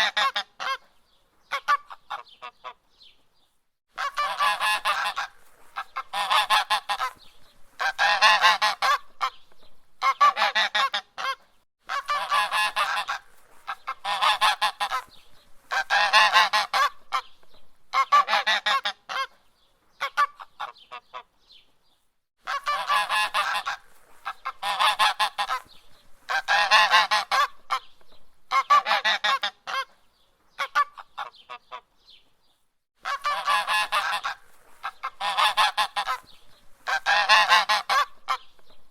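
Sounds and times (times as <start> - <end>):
goose honking: 4.0 - 7.2, 7.8 - 9.4, 10.0 - 15.1, 15.7 - 17.2, 17.9 - 19.3, 22.4 - 25.7, 26.3 - 27.9, 28.5 - 29.9, 33.0 - 38.5.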